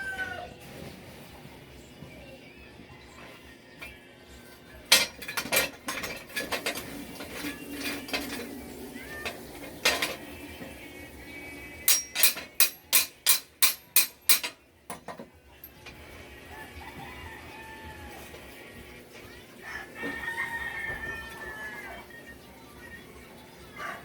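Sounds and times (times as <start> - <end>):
metal striking metal: 11.9 - 14.6.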